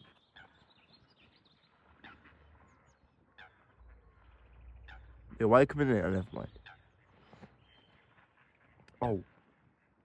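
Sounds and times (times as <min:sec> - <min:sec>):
faint high bird chirps: 0:00.0 - 0:09.2
sharp bird calls: 0:00.0 - 0:10.0.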